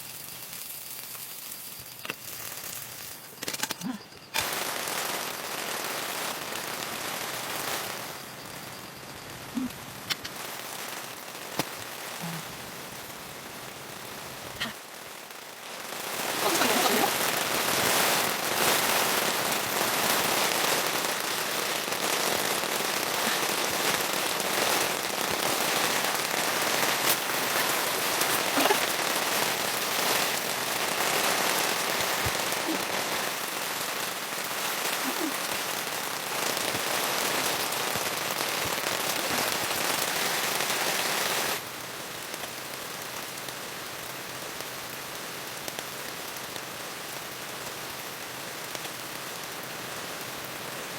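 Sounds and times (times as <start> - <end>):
heavy rain falling: 0.0 - 50.9.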